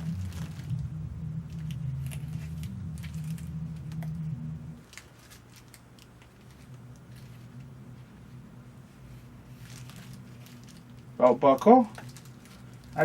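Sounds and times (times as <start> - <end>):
plastic packaging crinkling: 0.0 - 0.9, 1.5 - 4.2, 4.8 - 7.7, 9.5 - 13.0
steady low hum: 0.0 - 13.0.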